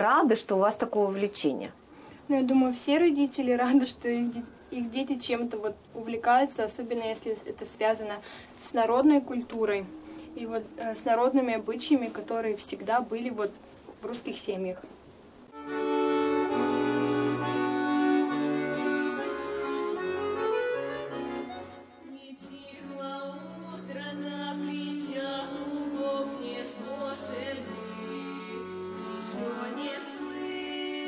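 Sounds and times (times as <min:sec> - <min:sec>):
accordion playing folk tune: 0:15.5 - 0:31.0.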